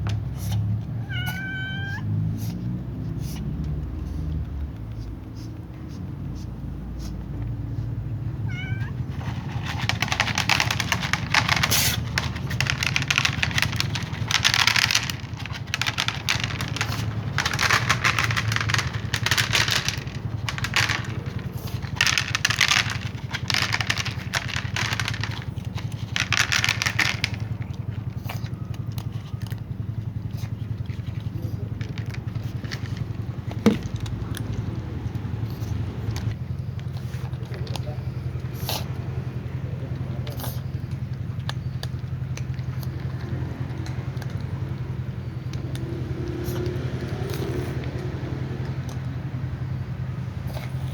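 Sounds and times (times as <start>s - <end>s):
cat noisy bursts: 1.0s - 2.4s.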